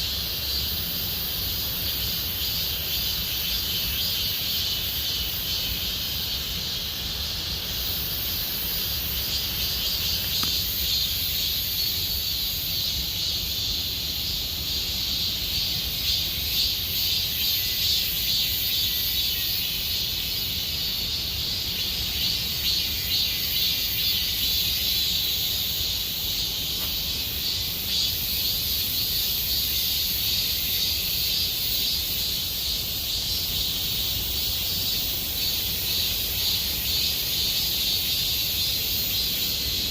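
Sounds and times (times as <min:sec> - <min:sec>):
cicadas buzzing: 0:00.0 - 0:39.9.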